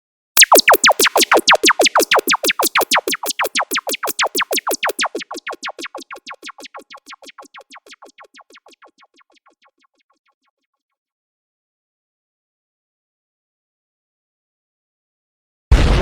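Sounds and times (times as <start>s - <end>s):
synthesized laser zaps: 0.4s - 9.5s.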